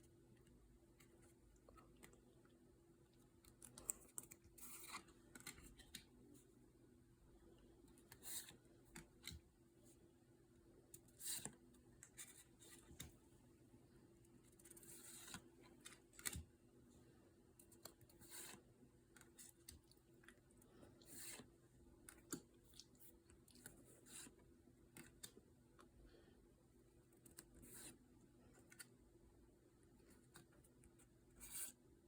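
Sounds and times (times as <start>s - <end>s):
trading cards rustling and sliding: 3.6s - 6.2s, 8.0s - 9.4s, 11.0s - 13.2s, 14.5s - 16.5s, 17.7s - 19.7s, 20.9s - 21.6s, 31.3s - 31.8s.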